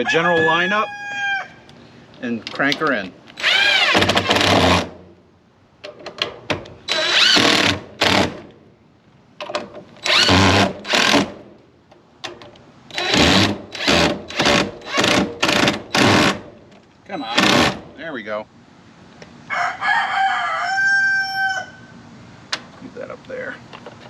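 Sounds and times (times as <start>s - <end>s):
power drill driving screws: 3.4s - 4.9s, 6.9s - 8.4s, 10.0s - 11.3s, 12.9s - 16.4s, 17.4s - 17.8s.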